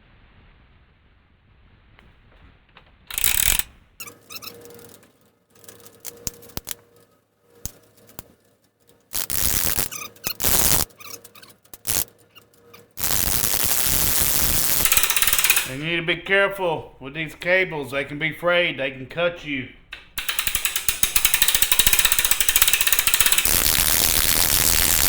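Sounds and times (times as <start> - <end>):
small clicks and handling knocks: 3.1 - 13.0
tape ripping off a roll: 9.1 - 12.1, 13.0 - 15.8, 23.3 - 25.0.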